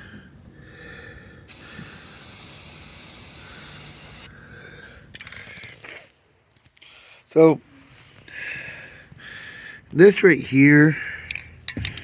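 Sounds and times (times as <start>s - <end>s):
spray paint can hissing: 1.5s - 4.3s.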